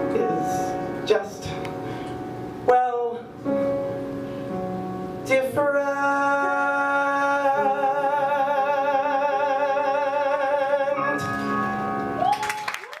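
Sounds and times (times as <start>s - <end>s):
man singing with vibrato: 0.0s - 1.8s, 2.6s - 3.6s, 5.2s - 12.0s
hands clapping: 12.2s - 13.0s.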